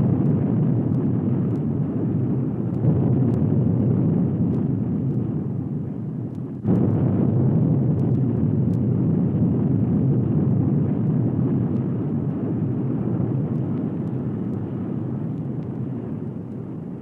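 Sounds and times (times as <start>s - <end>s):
bomb explosion: 0.0s - 17.0s
deep rumble: 0.0s - 17.0s.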